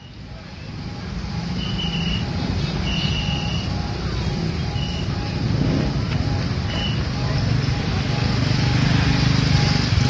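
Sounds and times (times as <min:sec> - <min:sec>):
bus engine and road rumble: 0:00.0 - 0:10.0.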